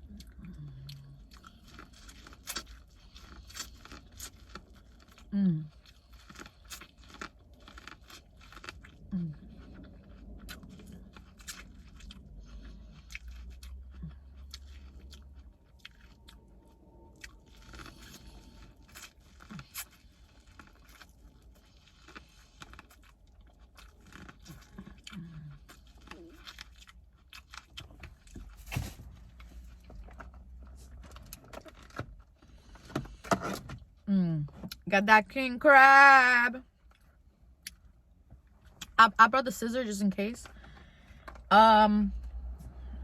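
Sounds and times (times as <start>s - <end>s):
person chewing and crunching food: 0.0s - 34.0s.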